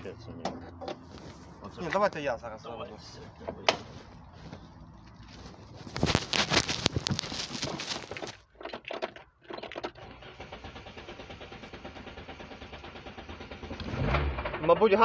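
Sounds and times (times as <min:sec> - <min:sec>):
engine cranking with clatter: 0:08.0 - 0:15.0
engine idling: 0:10.0 - 0:15.0.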